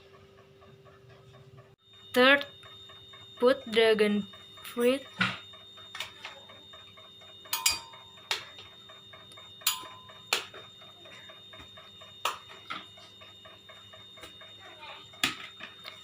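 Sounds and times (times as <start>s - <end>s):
faint steady ticking: 0.0s - 16.0s.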